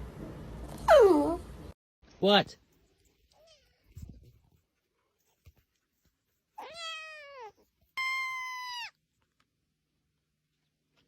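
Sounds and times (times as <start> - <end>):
cat meowing: 6.6 - 9.0.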